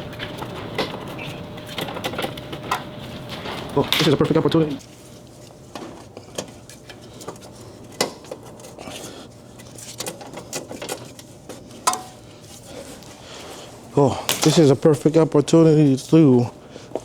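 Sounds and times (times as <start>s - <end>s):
faint low hum: 0.0s - 5.4s.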